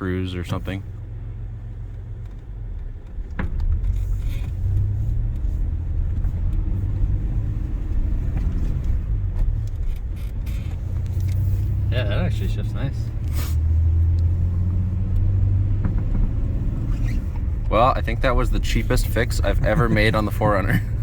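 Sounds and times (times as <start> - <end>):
engine and road rumble: 0.0 - 21.0.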